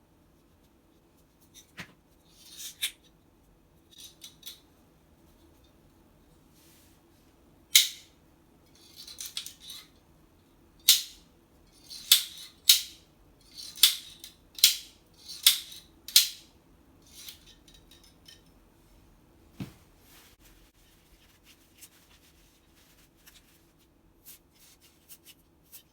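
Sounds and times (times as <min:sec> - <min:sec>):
rustling handling noise: 0:08.7 - 0:10.1, 0:17.1 - 0:25.9.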